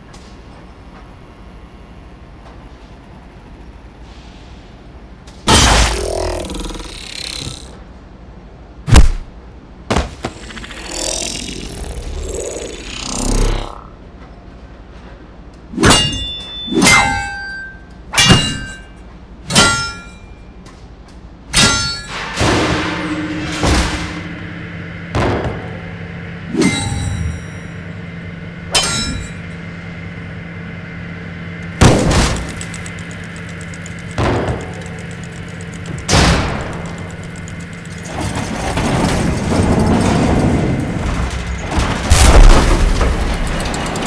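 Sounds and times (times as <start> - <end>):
heavy booming metallic hits: 5.5 - 7.7, 8.9 - 13.9, 15.8 - 20.3, 21.5 - 44.0
low hum: 5.5 - 7.8, 8.9 - 14.4, 21.6 - 44.0
rumbling swell: 9.9 - 14.0.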